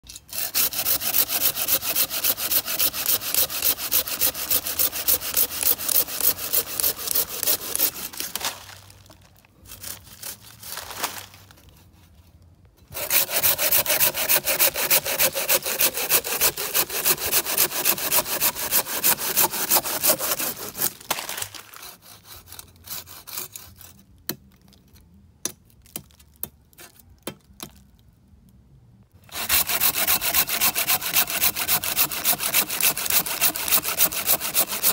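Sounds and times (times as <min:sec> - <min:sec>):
saw cutting wood: 0:00.0 - 0:08.5, 0:12.9 - 0:23.9, 0:29.2 - 0:34.9.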